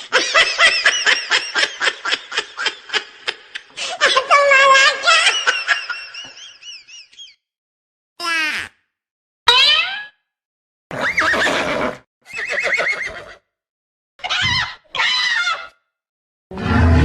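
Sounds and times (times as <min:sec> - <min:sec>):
horse neighing: 0:10.9 - 0:13.4.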